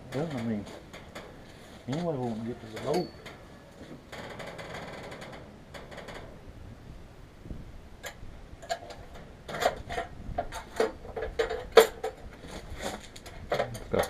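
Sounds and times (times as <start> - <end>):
metal parts clicking and clinking: 8.0 - 14.0.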